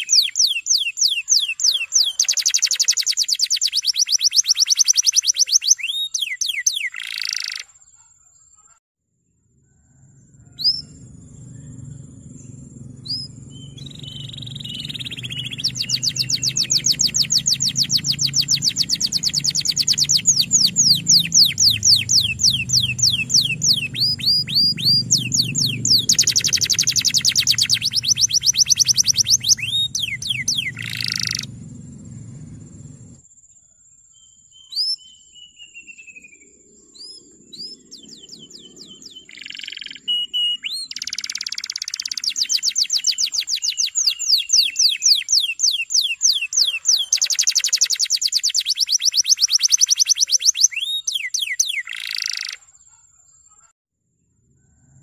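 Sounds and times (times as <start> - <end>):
thin bird whistles: 0.0 - 7.7, 9.9 - 11.8, 13.1 - 31.5, 37.0 - 52.6
canary singing rolling trills: 0.0 - 8.8, 9.4 - 33.2, 34.2 - 53.7
low background rumble: 9.8 - 33.2.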